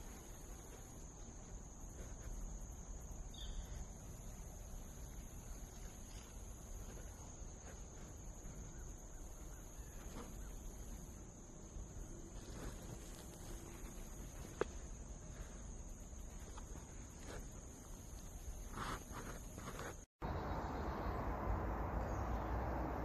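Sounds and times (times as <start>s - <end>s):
insect chorus droning: 0.0s - 23.0s
faint chirp: 3.2s - 14.5s.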